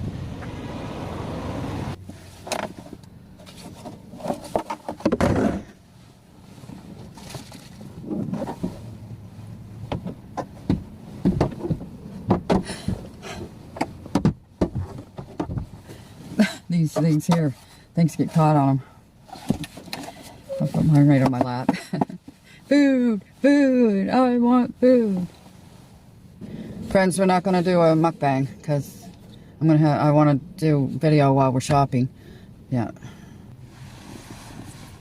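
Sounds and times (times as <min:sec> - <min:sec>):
vehicle cabin hum: 0:00.0 - 0:35.0
rustling: 0:02.0 - 0:14.0.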